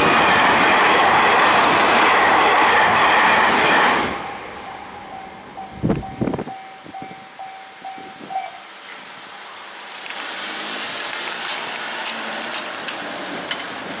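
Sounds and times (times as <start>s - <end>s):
level-crossing warning bell: 4.4s - 9.5s
rushing hiss with sharp ticks: 7.5s - 14.0s.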